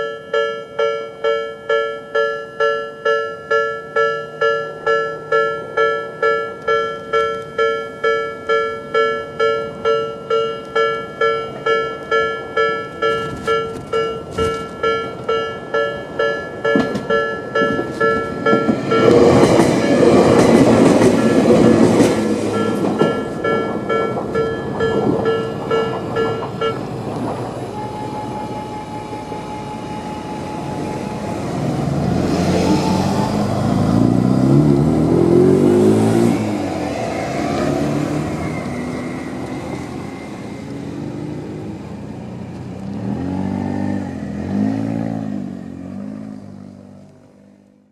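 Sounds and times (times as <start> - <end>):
level crossing warning bell: 0.0 - 32.3
electric train passing: 0.0 - 47.6
road vehicles pulling away: 13.2 - 47.9.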